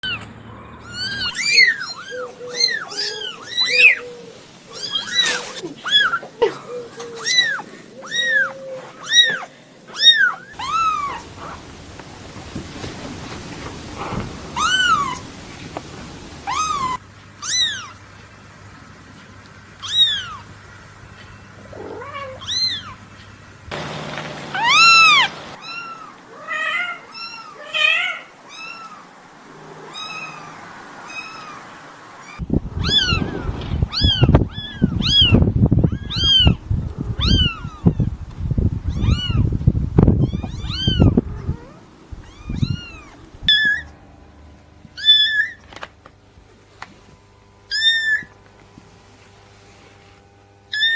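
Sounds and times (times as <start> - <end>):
kittens meowing: 0.0 - 11.6, 14.0 - 15.3, 16.4 - 18.0, 19.8 - 20.5, 21.7 - 23.0, 24.6 - 38.2, 38.9 - 44.0, 45.0 - 45.6, 47.7 - 48.4
low knocking and rustling: 10.7 - 17.0.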